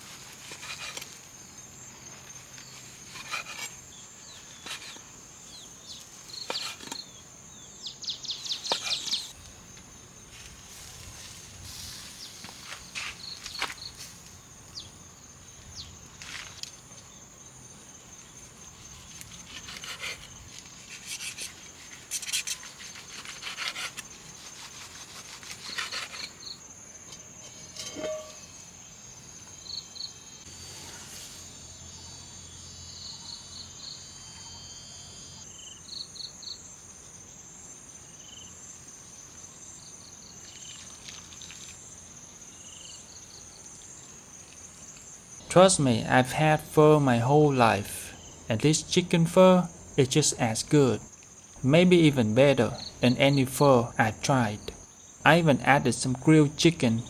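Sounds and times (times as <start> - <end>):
insects chirping: 0.0 - 57.0.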